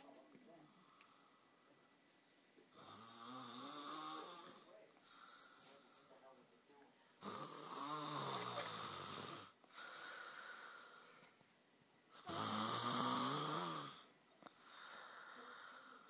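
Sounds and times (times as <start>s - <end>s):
child snoring: 2.8s - 4.8s, 7.2s - 9.6s, 12.2s - 14.1s
soft breath: 4.2s - 6.4s, 8.4s - 11.5s, 14.4s - 16.0s.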